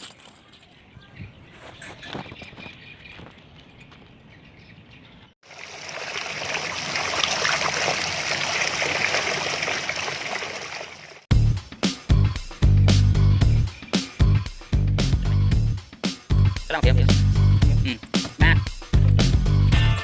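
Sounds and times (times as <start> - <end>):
bird chirps: 0.4 - 5.4, 13.6 - 14.4
rushing water: 5.4 - 11.3.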